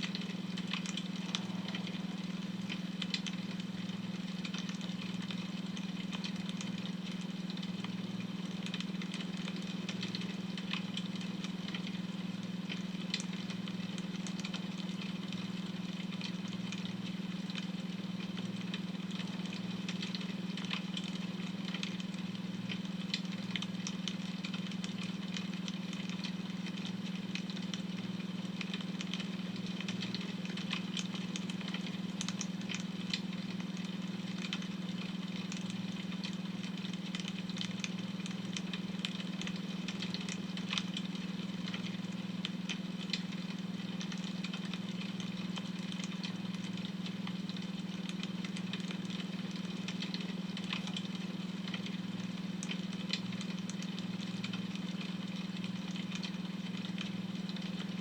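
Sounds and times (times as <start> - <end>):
wood fire crackling: 0.1 - 15.6.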